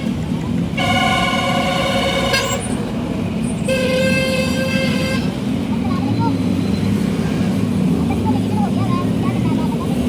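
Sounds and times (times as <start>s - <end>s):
engines rumbling: 0.0s - 10.0s
vehicle horns blasting: 0.7s - 5.3s.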